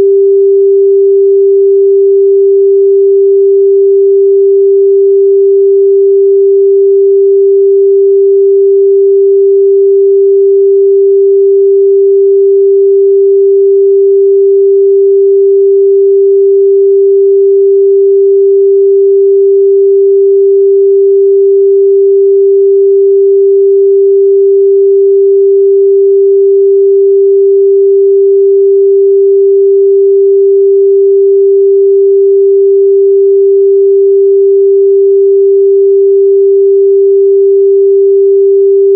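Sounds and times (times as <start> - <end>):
sine-wave test tone: 0.0 - 38.9.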